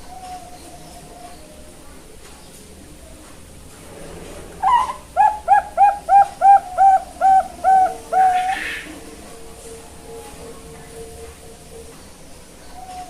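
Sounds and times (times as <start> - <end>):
dove cooing song: 0.0 - 1.9, 4.6 - 13.0.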